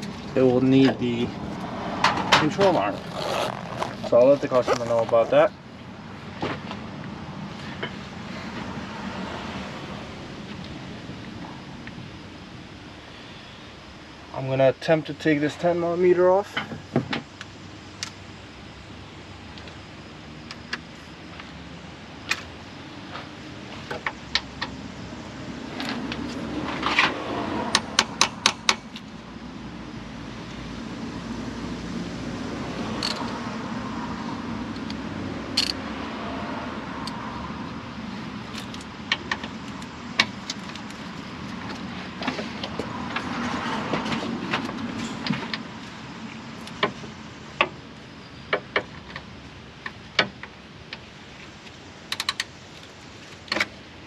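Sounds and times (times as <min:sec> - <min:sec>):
metal hand tools clicking: 0:35.6 - 0:35.8.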